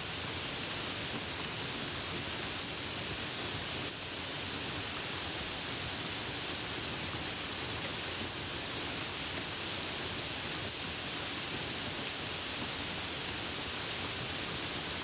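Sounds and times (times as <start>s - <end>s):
rain falling: 0.0s - 15.0s.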